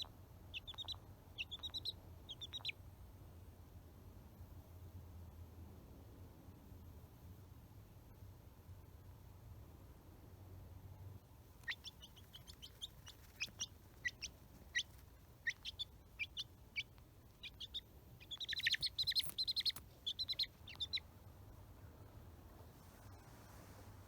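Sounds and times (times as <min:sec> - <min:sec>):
chick peeping: 0:00.0 - 0:02.8, 0:11.6 - 0:21.1.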